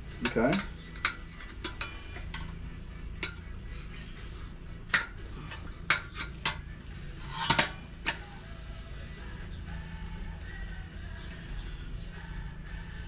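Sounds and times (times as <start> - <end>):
tire irons clinking on rim: 0.0 - 4.0, 4.9 - 8.3.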